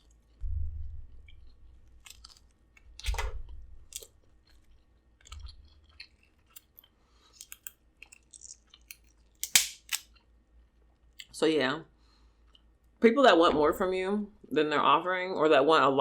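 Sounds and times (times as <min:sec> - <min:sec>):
person chewing food: 0:00.0 - 0:11.3, 0:12.2 - 0:12.8
low thumps: 0:00.4 - 0:01.4.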